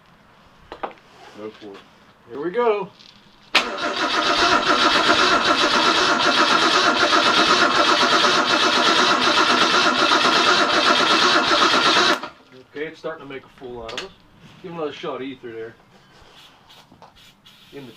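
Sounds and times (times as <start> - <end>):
starter motor cranking engine: 3.6 - 12.4.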